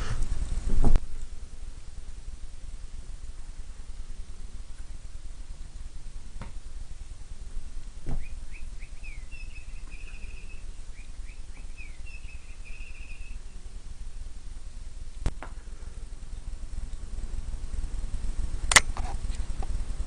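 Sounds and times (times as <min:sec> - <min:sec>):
steady low hum: 0:00.0 - 0:20.0
thump: 0:08.0 - 0:08.3
small bird singing: 0:08.1 - 0:13.7.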